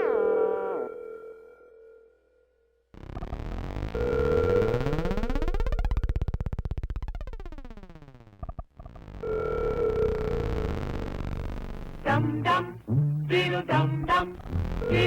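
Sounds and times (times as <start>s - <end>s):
harsh pulsing synth buzz: 3.0s - 15.0s
steady held synth tone: 9.1s - 15.0s.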